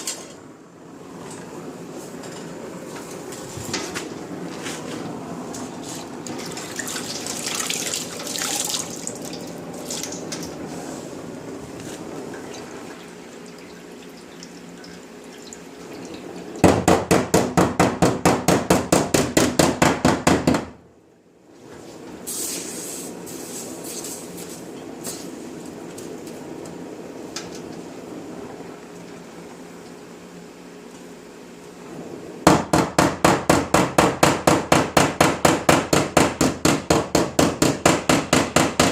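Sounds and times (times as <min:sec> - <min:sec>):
heating flame hissing: 0:22.2 - 0:28.8.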